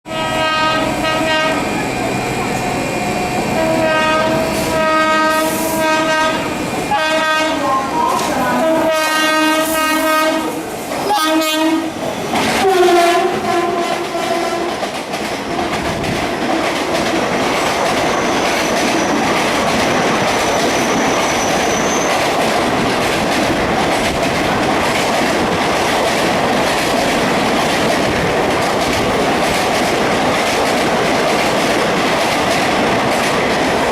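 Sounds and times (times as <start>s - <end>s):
locomotive horn blasts: 0.1s - 1.9s, 3.2s - 12.0s, 12.6s - 14.8s
train rushing past: 0.1s - 33.9s.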